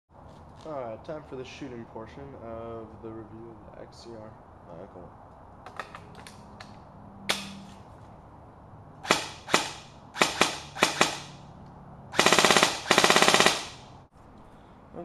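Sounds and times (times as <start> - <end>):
airsoft rifle automatic bursts: 9.0 - 11.4, 12.2 - 14.0
airsoft rifle shots: 9.0 - 11.4, 12.1 - 14.0.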